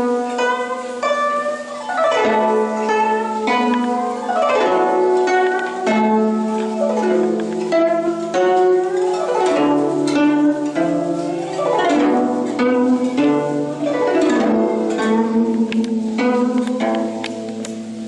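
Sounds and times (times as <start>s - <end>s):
guzheng plucked notes: 0.0s - 18.0s.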